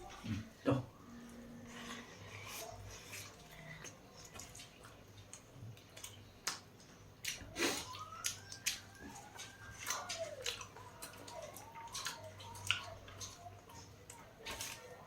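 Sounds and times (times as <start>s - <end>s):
mouth clicks and lip smacks chewing: 3.1s - 14.9s.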